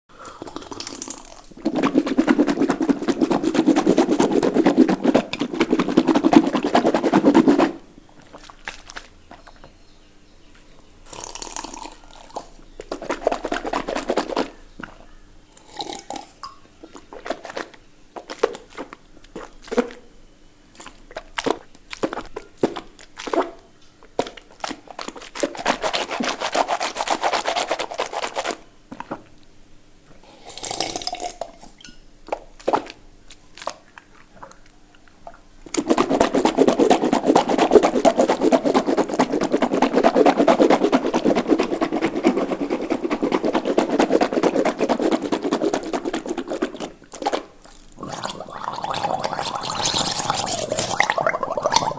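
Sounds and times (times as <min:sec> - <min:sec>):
mouth gurgling: 0:43.2 - 0:51.9
wet mouth clicks: 0:46.5 - 0:51.9.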